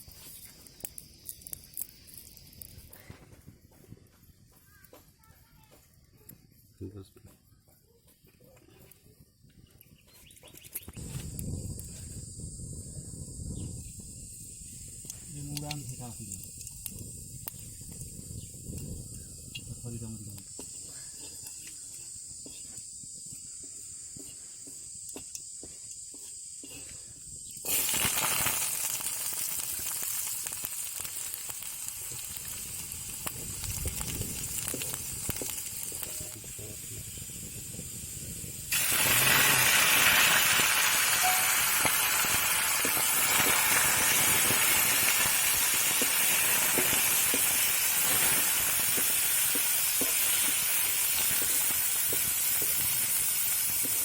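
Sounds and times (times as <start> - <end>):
high insect drone: 0.0 - 3.5, 10.8 - 54.0
food sizzling in hot oil: 27.4 - 54.0.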